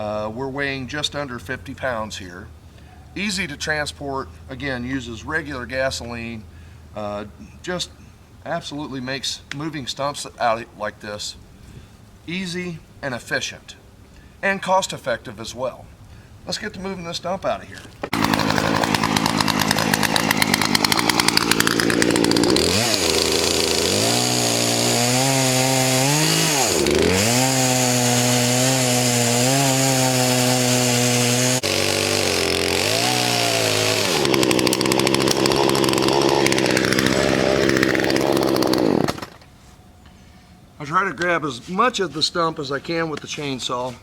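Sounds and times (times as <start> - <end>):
chainsaw cutting wood: 18.0 - 39.5.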